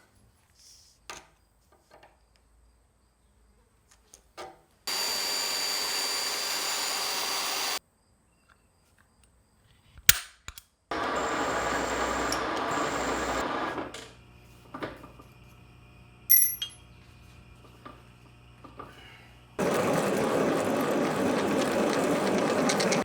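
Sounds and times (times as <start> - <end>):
power tool running: 4.9 - 7.8, 10.9 - 14.4, 17.8 - 23.0.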